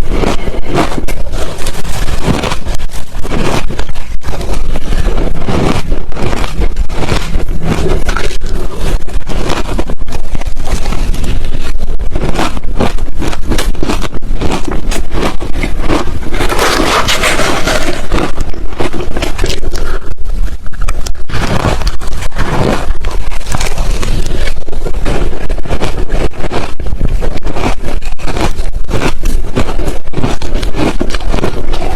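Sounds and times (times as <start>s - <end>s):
ice crunching while chewed: 0.0s - 31.9s.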